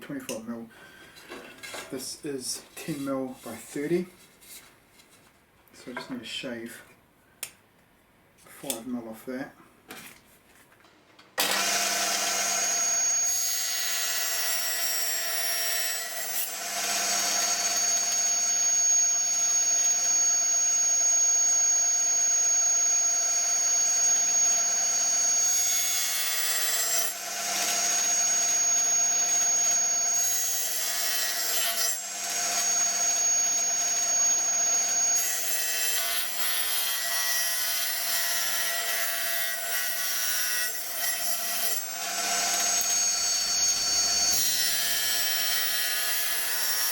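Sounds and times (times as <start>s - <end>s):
table saw cutting wood: 11.4s - 46.9s.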